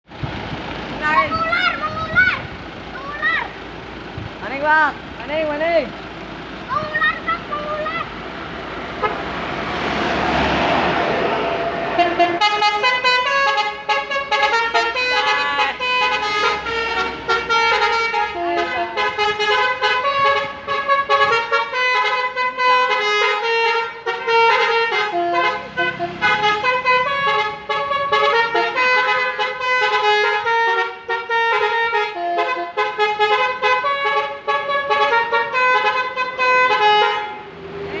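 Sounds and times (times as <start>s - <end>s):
musical bus horns playing a tune: 8.8s - 37.6s.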